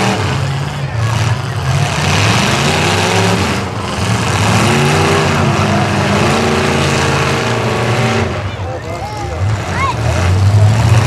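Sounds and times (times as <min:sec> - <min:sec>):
car engines revving: 0:00.0 - 0:11.0.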